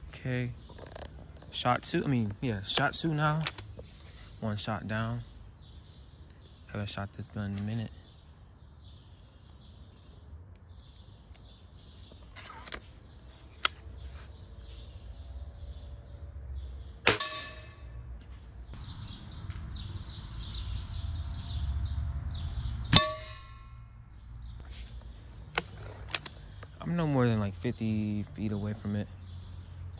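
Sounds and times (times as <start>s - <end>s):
birds chirping: 0.0s - 29.9s
air rifle shots: 17.0s - 17.9s.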